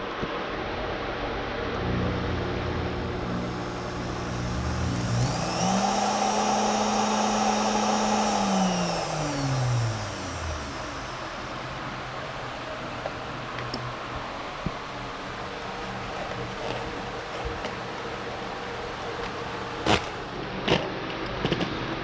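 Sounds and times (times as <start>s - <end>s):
small electric motor whining: 1.8s - 11.9s.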